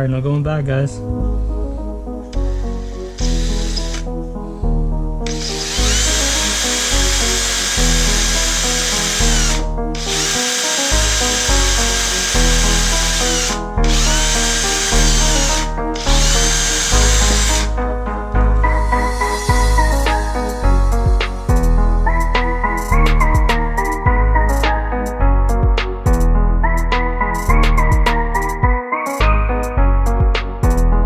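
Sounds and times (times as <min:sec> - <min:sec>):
background music: 0:00.0 - 0:31.0
power drill whining: 0:02.4 - 0:04.1, 0:05.3 - 0:17.8, 0:18.6 - 0:21.3.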